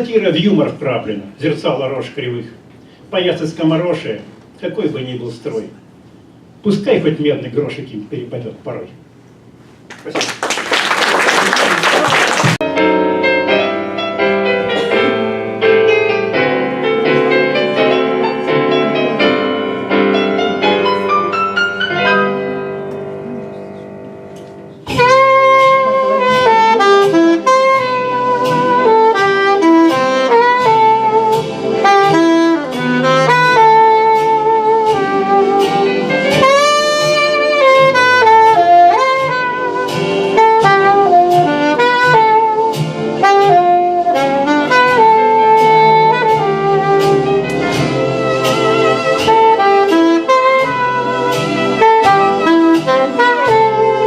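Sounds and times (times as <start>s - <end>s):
saxophone melody: 11.9s - 54.0s
bass line: 24.8s - 54.0s
steady drum beat: 24.9s - 54.0s.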